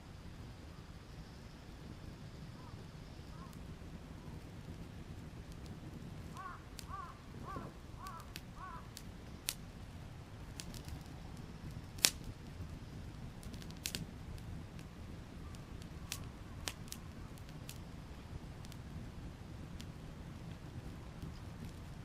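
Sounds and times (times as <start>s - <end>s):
campfire crackling: 0.0s - 22.0s
bird calling: 6.3s - 8.9s.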